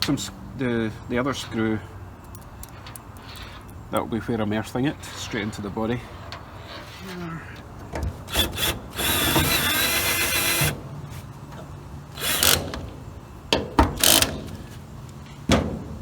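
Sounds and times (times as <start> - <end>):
power drill driving screw into metal: 8.3 - 10.8, 12.2 - 12.8, 14.0 - 14.4.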